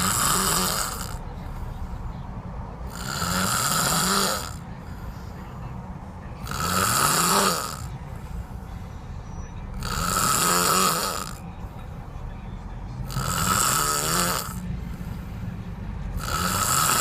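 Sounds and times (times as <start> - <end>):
man snoring: 0.0 - 1.3, 2.8 - 4.6, 6.4 - 8.0, 9.8 - 11.4, 13.0 - 14.6, 16.2 - 17.0.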